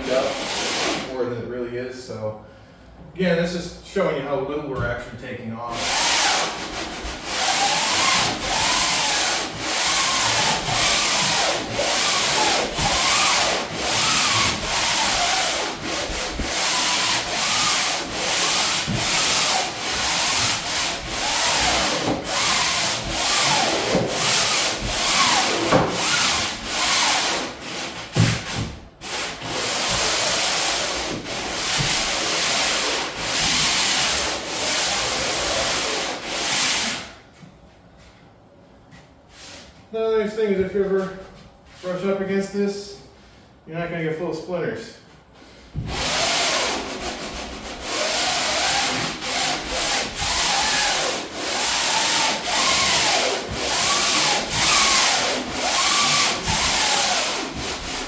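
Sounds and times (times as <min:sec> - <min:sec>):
sandpaper rasping on plywood: 0:00.0 - 0:01.1, 0:05.7 - 0:37.0, 0:45.8 - 0:58.0.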